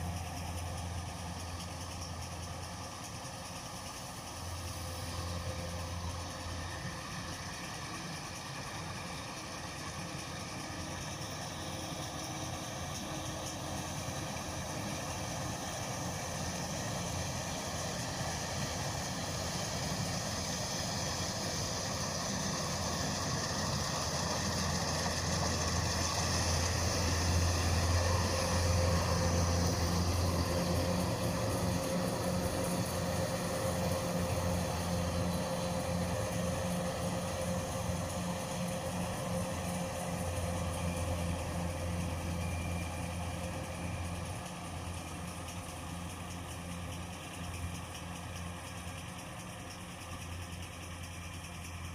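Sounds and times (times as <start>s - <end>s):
diesel engine running: 0.0s - 51.9s
steady whine: 0.0s - 51.9s.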